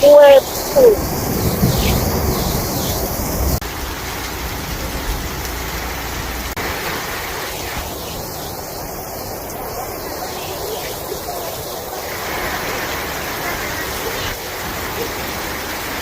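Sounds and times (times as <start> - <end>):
heavy rain pouring: 0.0 - 16.0
wind buffeting microphone: 0.0 - 16.0.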